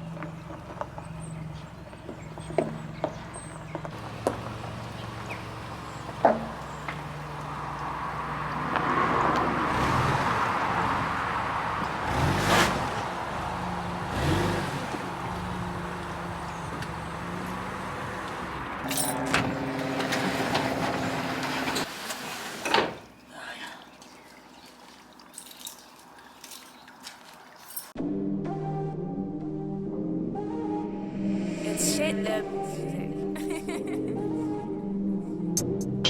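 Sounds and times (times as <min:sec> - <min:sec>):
car engine driving: 0:00.0 - 0:23.0
road noise: 0:00.0 - 0:28.0, 0:30.5 - 0:36.0.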